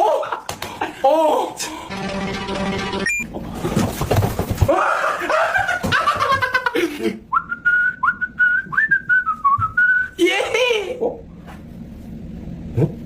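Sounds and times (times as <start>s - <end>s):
person whistling short notes: 7.4s - 10.2s.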